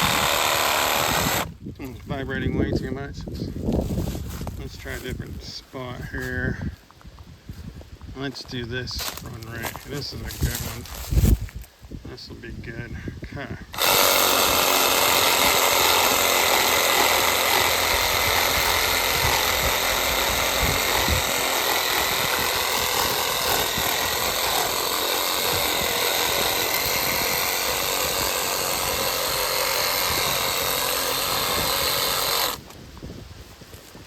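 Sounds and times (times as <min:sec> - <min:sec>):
reciprocating saw cutting branch: 0:00.0 - 0:01.5, 0:13.7 - 0:32.7.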